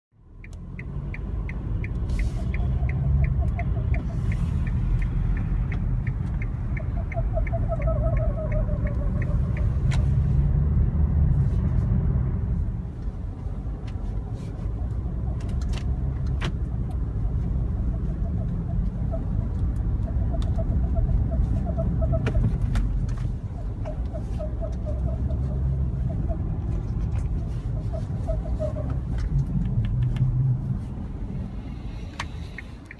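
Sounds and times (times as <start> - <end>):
car engine rumble: 0.1 - 32.9
rapid regular chirp: 2.4 - 9.8
wavering squeaks: 6.5 - 9.9
car creaking: 13.2 - 31.0.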